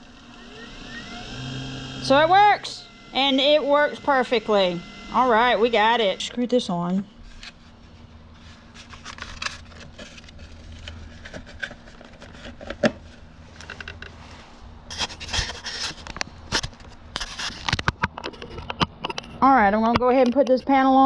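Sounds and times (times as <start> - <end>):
faint steady hum: 0.0 - 21.0
scraping and small clicks: 14.9 - 20.6.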